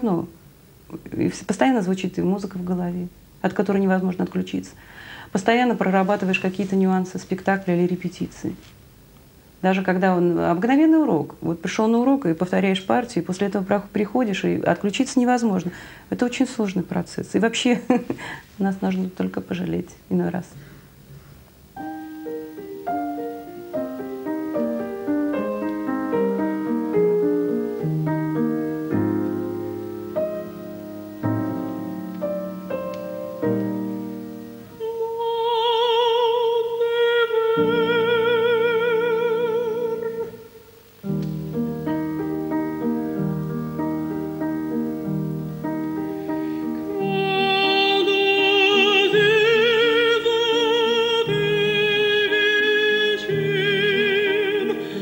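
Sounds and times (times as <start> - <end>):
piano: 21.4 - 55.0
woman singing operatically: 34.7 - 40.9, 46.9 - 55.0.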